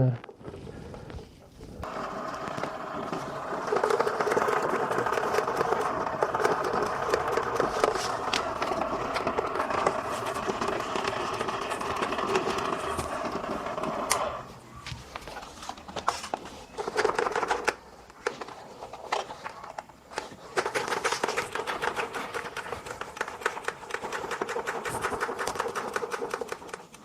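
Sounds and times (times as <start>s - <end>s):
aquarium filter running: 1.0s - 15.3s.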